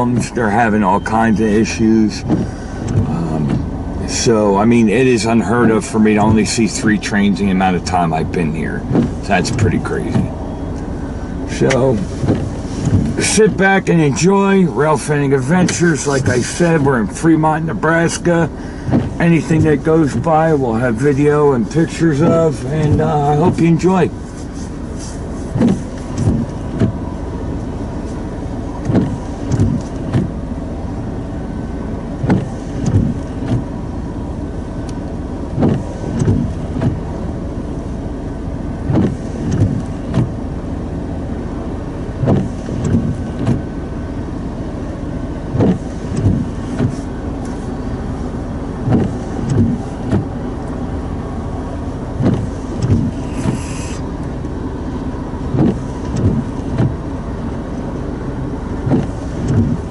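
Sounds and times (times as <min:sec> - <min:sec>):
train rumble: 0:00.0 - 0:59.9
brief hiss: 0:53.1 - 0:54.1.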